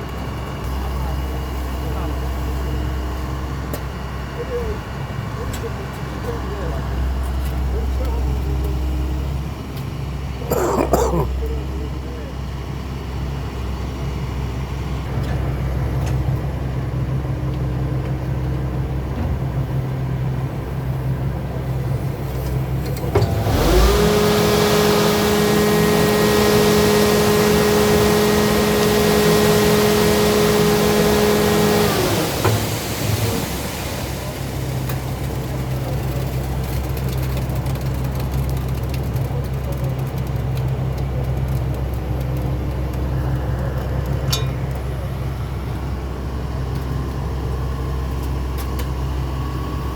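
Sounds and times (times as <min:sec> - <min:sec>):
low engine hum: 0:00.0 - 0:49.9
engine revving: 0:23.2 - 0:33.5.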